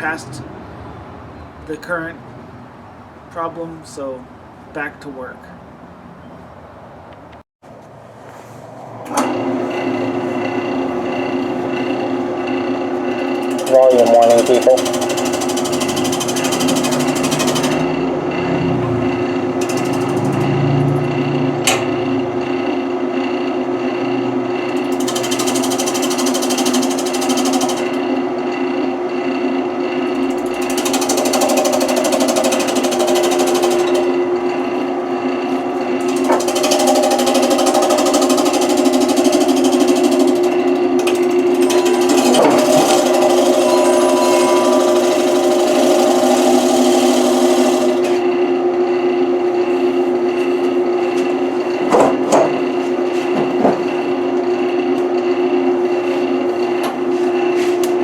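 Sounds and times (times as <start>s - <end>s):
wood lathe humming: 9.2s - 21.4s, 24.6s - 28.2s, 30.0s - 48.6s
turning tool cutting wood: 13.1s - 18.0s, 19.6s - 21.0s, 24.7s - 28.0s, 30.1s - 34.2s, 35.8s - 48.2s.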